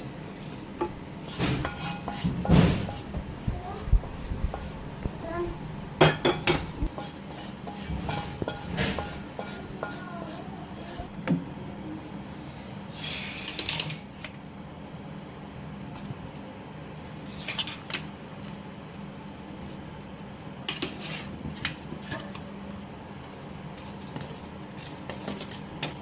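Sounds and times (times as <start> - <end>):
pots and utensils clinking: 0.8 - 3.3, 6.0 - 11.0, 23.2 - 26.0.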